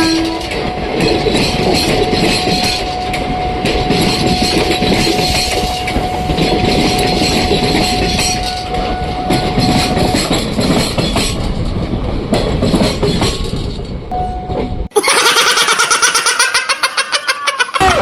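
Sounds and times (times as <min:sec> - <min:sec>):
steady high tone: 0:00.0 - 0:10.3
train wheels clattering: 0:00.0 - 0:14.8.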